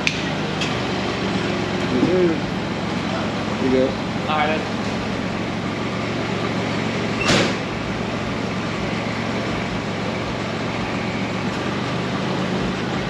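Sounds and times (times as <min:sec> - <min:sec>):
low mechanical hum: 0:00.0 - 0:13.0
sharp bang: 0:07.2 - 0:07.8.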